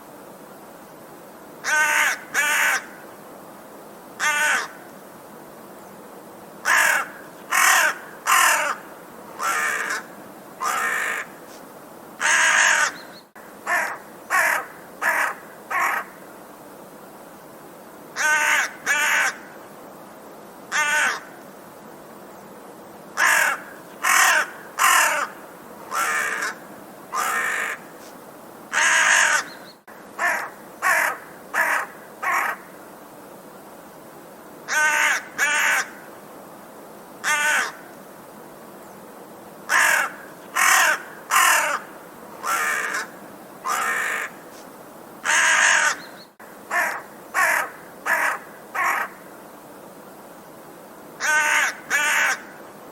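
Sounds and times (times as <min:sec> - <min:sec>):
faint steady hiss: 0:00.0 - 0:52.9
crow cawing: 0:01.6 - 0:03.0, 0:04.2 - 0:04.8, 0:06.6 - 0:11.4, 0:12.2 - 0:13.0, 0:13.7 - 0:16.2, 0:18.2 - 0:19.5, 0:20.7 - 0:21.3, 0:23.2 - 0:27.9, 0:28.7 - 0:29.6, 0:30.2 - 0:32.7, 0:34.7 - 0:36.0, 0:37.2 - 0:37.9, 0:39.7 - 0:44.4, 0:45.2 - 0:46.1, 0:46.7 - 0:49.2, 0:51.2 - 0:52.6.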